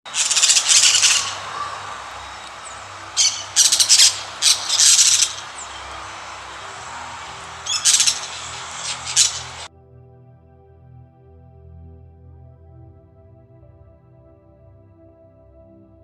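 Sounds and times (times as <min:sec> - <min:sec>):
parrots squawking: 0:00.1 - 0:09.7.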